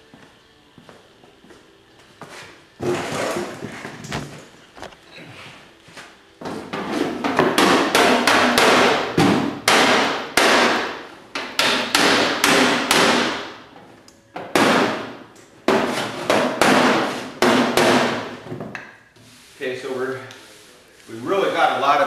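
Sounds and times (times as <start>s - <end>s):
hammer striking sheet steel: 7.2s - 13.6s, 14.4s - 18.4s.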